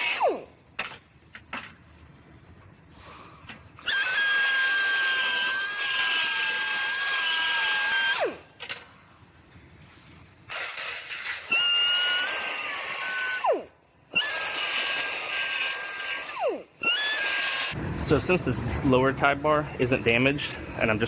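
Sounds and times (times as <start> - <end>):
air tool cutting sheet metal: 0.0 - 0.5, 3.8 - 8.4, 10.5 - 17.8.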